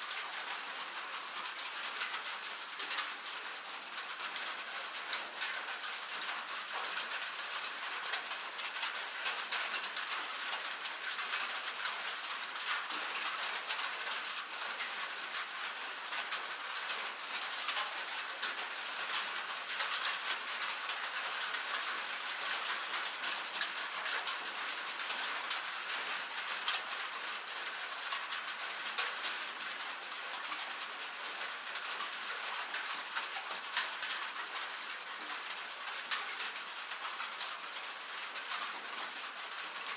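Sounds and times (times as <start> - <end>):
rain on a metal roof: 0.0 - 39.9.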